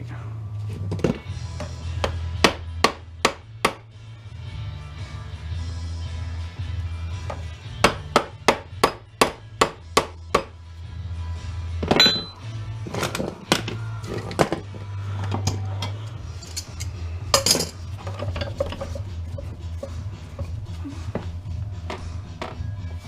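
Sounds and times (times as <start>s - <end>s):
background music with bass: 0.0s - 23.0s
metallic clinks and knocks: 11.8s - 12.4s, 15.4s - 19.1s.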